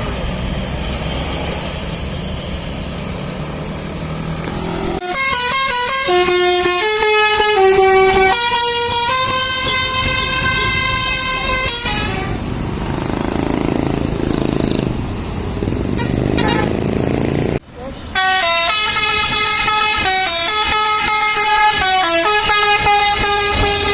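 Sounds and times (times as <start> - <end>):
engine noise: 0.0 - 23.9
traffic noise: 0.0 - 23.9
multi-tone bus horn playing a tune: 5.0 - 12.5, 15.9 - 17.0, 18.1 - 23.9.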